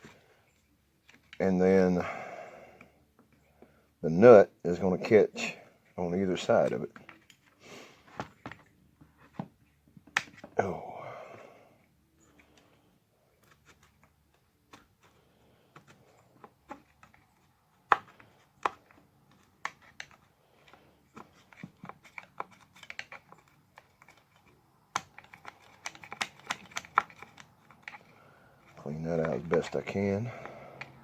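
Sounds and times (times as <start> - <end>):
hand tool scraping plastic: 13.4 - 31.0.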